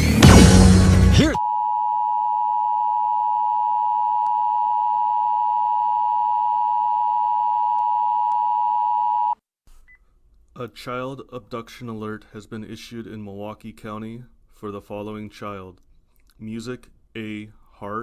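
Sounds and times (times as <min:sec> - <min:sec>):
loud noisy burst: 0:00.2 - 0:01.4.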